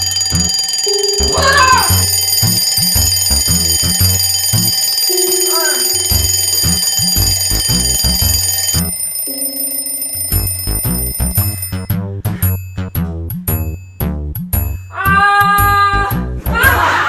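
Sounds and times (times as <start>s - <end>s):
alarm clocks ringing and beeping: 0.0s - 12.9s.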